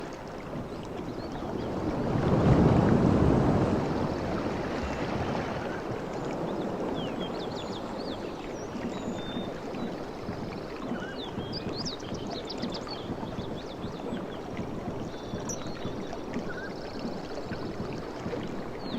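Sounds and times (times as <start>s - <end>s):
rush of moving water: 0.0s - 18.9s
small birds chirping: 5.7s - 17.8s.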